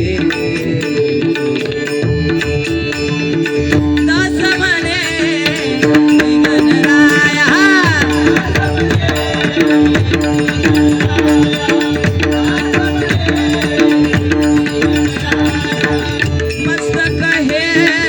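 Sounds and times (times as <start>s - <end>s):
hand drum keeping time: 0.0s - 18.0s.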